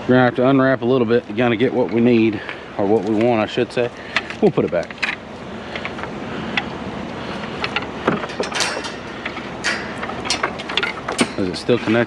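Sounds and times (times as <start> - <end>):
steady background hiss: 0.0 - 12.0
light clicks and knocks: 4.1 - 12.0.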